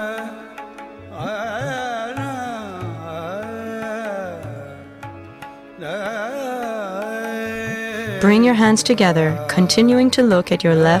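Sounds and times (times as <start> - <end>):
ornamented melody: 0.0 - 11.0.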